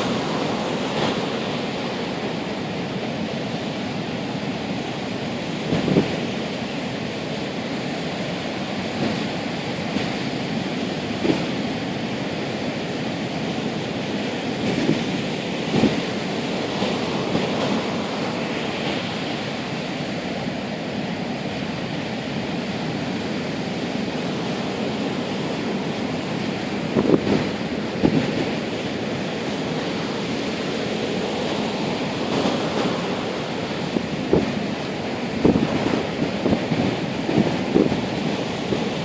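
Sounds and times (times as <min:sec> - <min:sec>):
wind thumps on microphone: 0:05.6 - 0:06.3, 0:11.2 - 0:11.6, 0:14.6 - 0:16.2, 0:26.6 - 0:28.8, 0:32.3 - 0:39.0
surf breaking: 0:22.8 - 0:39.0.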